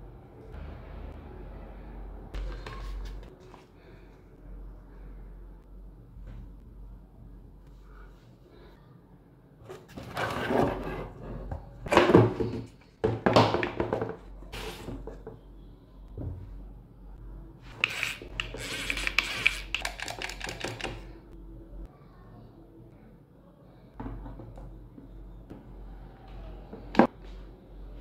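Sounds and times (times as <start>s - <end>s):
objects rustling and knocking: 9.6s - 15.4s.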